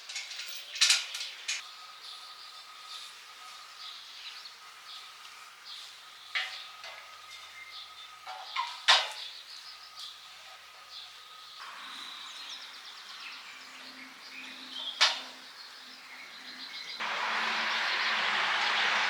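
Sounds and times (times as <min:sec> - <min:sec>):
birds chirping: 0:00.6 - 0:19.0
steel panels clanking: 0:08.2 - 0:09.2.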